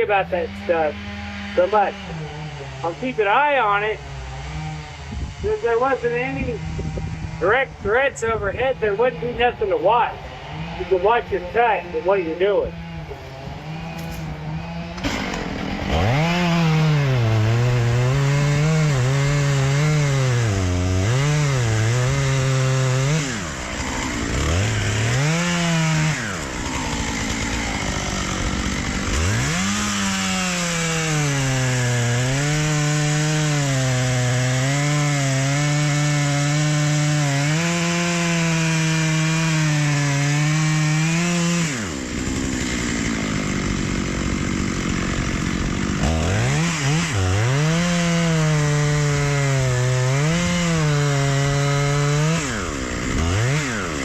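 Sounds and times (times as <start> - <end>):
chainsaw cutting into tree trunk: 0.0 - 54.0.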